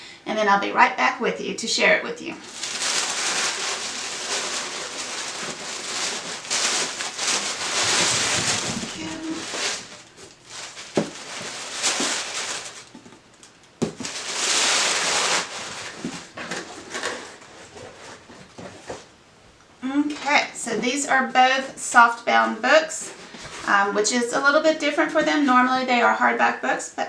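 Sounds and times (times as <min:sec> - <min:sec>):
packaging rustling and crinkling: 0:02.4 - 0:19.1.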